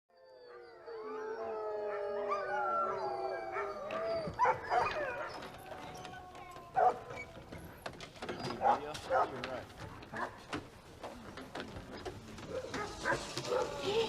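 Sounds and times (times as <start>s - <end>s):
sled dogs howling: 0.1s - 7.8s, 12.4s - 14.0s
dogs barking and yipping: 0.4s - 10.7s, 12.3s - 14.0s.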